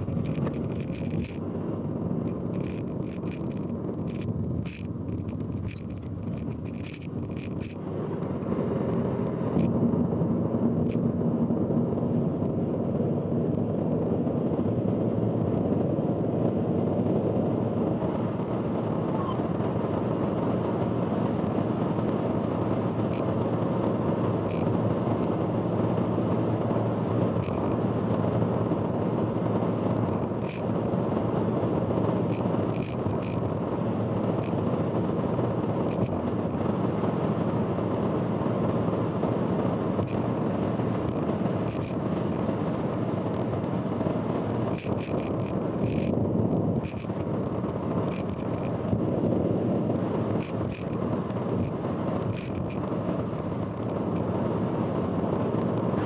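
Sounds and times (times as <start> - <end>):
sharp ticks: 0.0 - 1.5, 2.2 - 9.8, 27.4 - 27.8, 30.0 - 30.7, 32.3 - 33.7, 35.9 - 36.6, 40.0 - 43.7, 44.4 - 49.0, 49.9 - 54.3
sped-up car driving rumble: 0.0 - 56.0.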